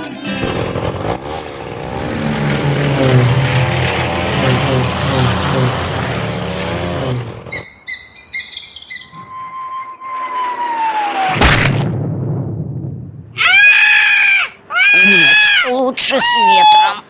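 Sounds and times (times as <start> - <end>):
loud crash: 0.1 - 6.6, 10.4 - 13.4
rumble: 0.2 - 7.6, 11.2 - 13.4
bird chirps: 7.4 - 10.0
long falling whistle: 9.2 - 11.4.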